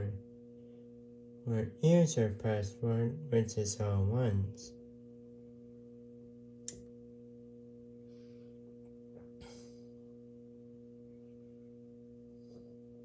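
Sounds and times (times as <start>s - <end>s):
low electrical hum: 0.0s - 13.0s
sharp click: 6.6s - 6.9s.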